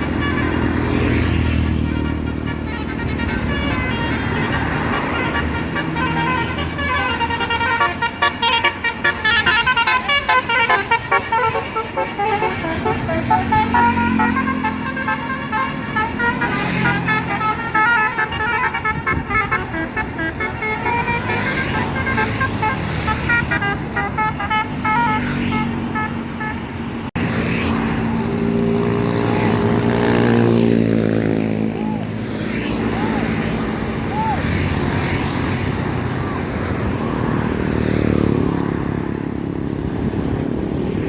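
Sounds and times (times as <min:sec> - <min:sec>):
bus engine running: 0:00.0 - 0:27.2
musical multi-tone bus horn: 0:00.0 - 0:27.9, 0:28.5 - 0:41.0.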